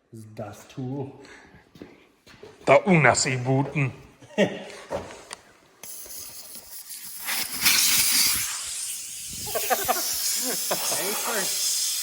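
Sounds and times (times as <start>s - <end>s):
air hissing through tire valve: 5.8s - 12.0s.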